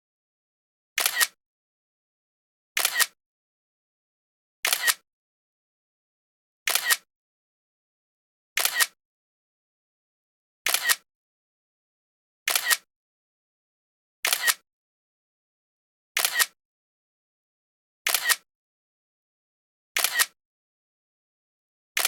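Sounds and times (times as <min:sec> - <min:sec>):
camera shutter double click: 0:01.0 - 0:01.4, 0:02.8 - 0:03.2, 0:04.6 - 0:05.0, 0:06.7 - 0:07.1, 0:08.6 - 0:09.0, 0:10.7 - 0:11.0, 0:12.5 - 0:12.9, 0:14.2 - 0:14.6, 0:16.2 - 0:16.6, 0:18.1 - 0:18.4, 0:20.0 - 0:20.4.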